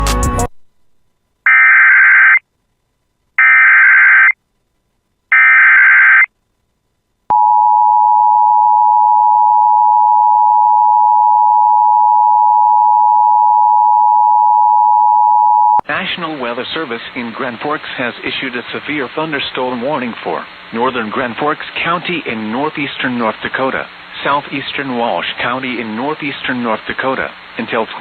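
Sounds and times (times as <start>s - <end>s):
digital data tone bursts: 3.4s - 4.4s.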